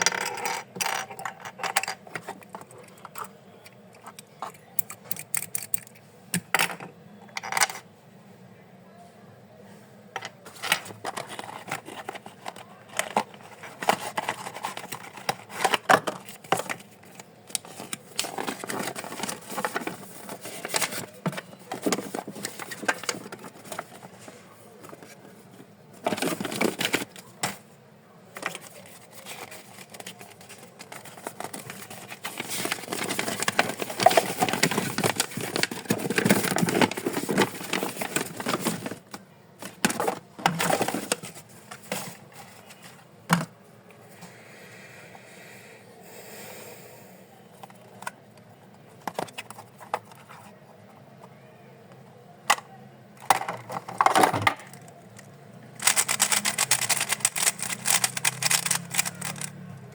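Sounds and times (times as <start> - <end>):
packaging crinkling and rustling: 10.4 - 25.4, 26.0 - 27.6, 28.4 - 42.9, 53.3 - 59.9
clicks and scrapes: 53.3 - 59.6.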